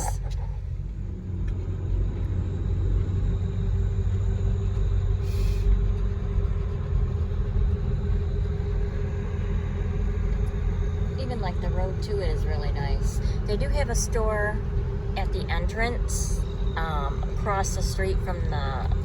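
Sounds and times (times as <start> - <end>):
engine and road rumble: 0.0 - 19.0
steady hum: 0.0 - 19.0.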